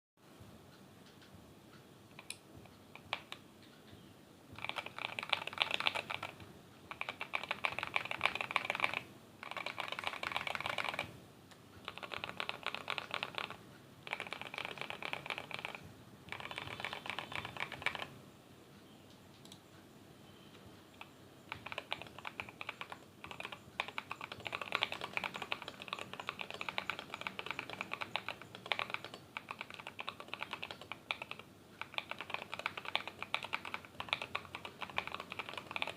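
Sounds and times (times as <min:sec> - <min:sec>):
typing on mechanical keyboard: 0:02.1 - 0:03.4, 0:04.5 - 0:11.1, 0:11.8 - 0:18.1, 0:21.0 - 0:35.9.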